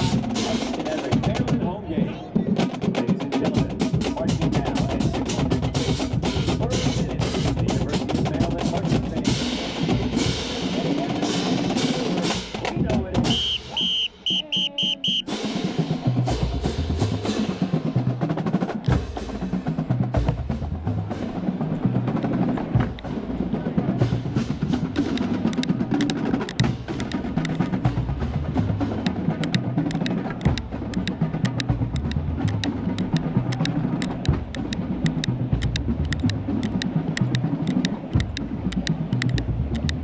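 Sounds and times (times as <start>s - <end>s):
snare drum rolls: 2.6s - 40.0s.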